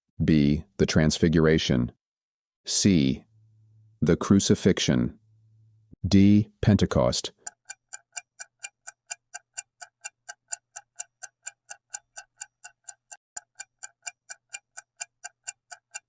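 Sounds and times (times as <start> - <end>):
rapid timer ticks: 7.2 - 16.0.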